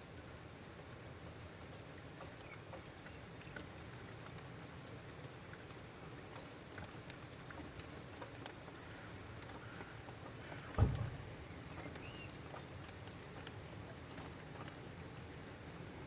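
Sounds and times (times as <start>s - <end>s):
heavy rain falling: 8.4s - 12.1s.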